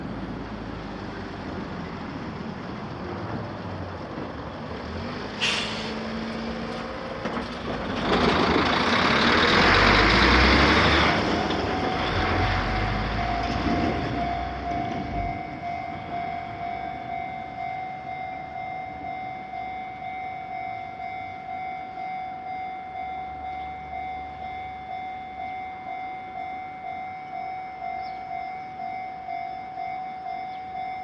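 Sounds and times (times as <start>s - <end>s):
vehicle passing loudly: 8.0s - 14.7s
steady electronic warning tone: 11.1s - 31.0s.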